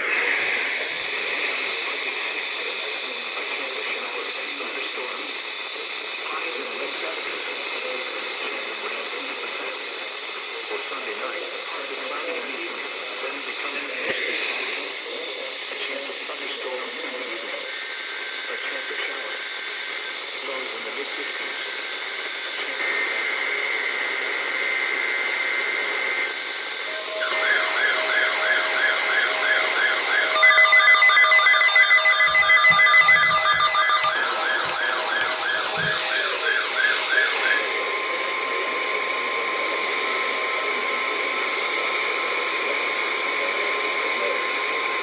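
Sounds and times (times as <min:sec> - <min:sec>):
electronic alert tones: 0:30.4 - 0:36.1.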